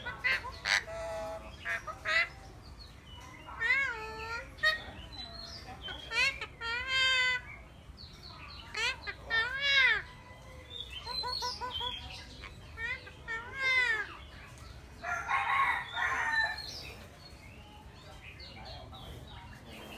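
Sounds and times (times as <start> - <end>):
parrot calling: 0.0 - 2.5, 3.1 - 7.6, 8.6 - 10.3, 11.0 - 14.2
parrot harsh squawk: 6.0 - 7.5, 8.7 - 10.2, 11.0 - 14.1.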